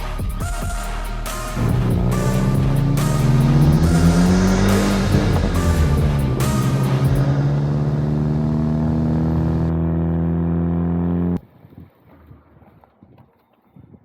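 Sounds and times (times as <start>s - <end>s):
car engine and exhaust drone: 1.6s - 11.4s.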